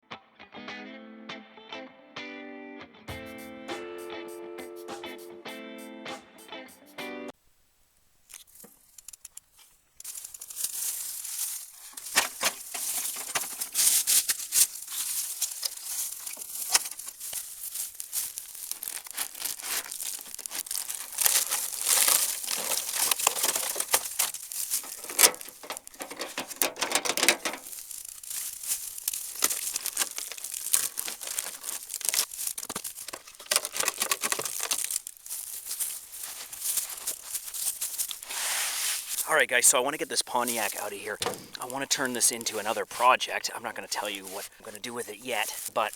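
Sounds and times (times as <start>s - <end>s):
dry leaves crunching and rustling: 9.5s - 45.9s.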